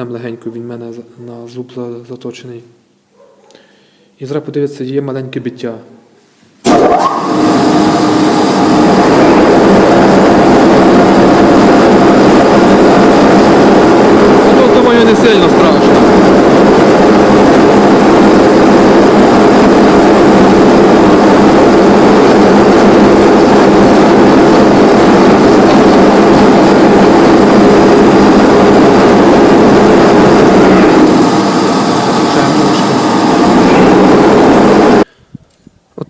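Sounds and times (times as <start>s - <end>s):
metal lathe cutting steel: 6.7s - 35.0s.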